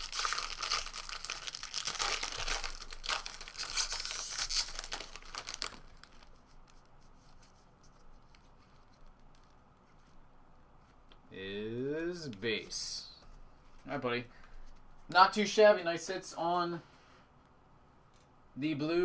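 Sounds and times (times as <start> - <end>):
card pack wrapper tearing and crinkling: 0.0 - 6.8.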